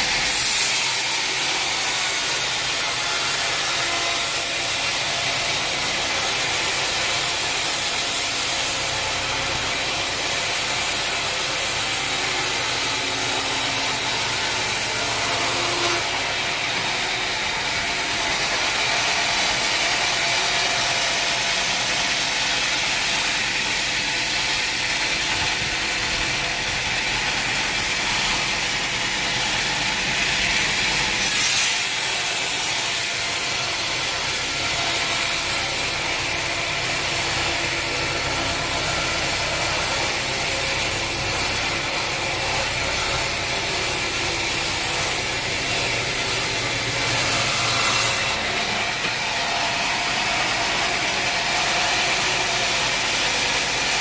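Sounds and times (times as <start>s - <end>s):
saw hiss: 0.0s - 16.2s, 30.8s - 49.3s
sawmill machinery clattering: 0.0s - 54.0s.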